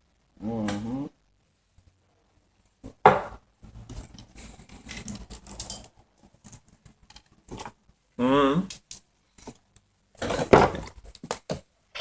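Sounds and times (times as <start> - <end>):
dishes and utensils clattering: 3.1 - 7.7.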